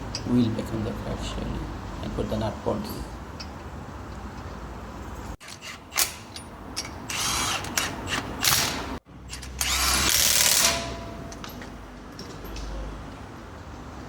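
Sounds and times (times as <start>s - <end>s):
power wrench bursts: 7.1s - 11.0s.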